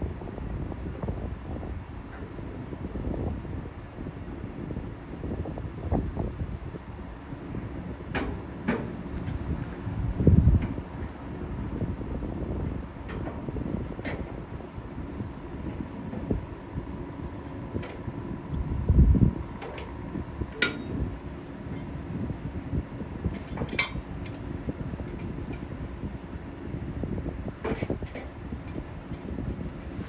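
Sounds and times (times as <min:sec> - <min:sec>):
low mechanical hum: 0:00.0 - 0:30.0
wind buffeting microphone: 0:00.0 - 0:30.0
low rumble: 0:05.6 - 0:30.0.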